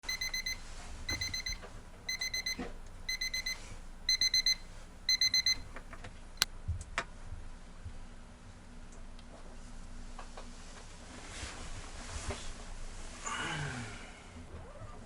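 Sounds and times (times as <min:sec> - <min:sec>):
electronic alarm beeping: 0:00.0 - 0:05.7.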